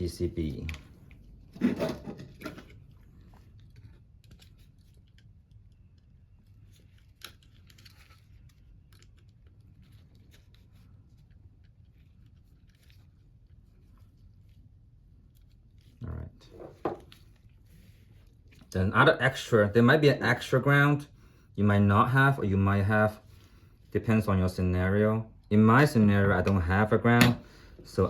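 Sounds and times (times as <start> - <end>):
clicks and rustles of wires: 0.4 - 18.8.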